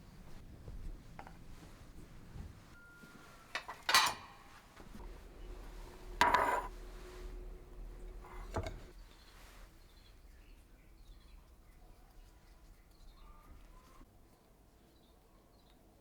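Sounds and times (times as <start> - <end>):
dishes and utensils clattering: 2.7 - 9.0.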